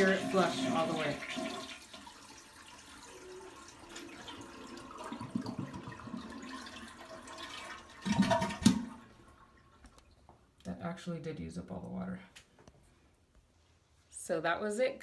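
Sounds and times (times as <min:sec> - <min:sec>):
toilet flushing: 0:00.0 - 0:10.0.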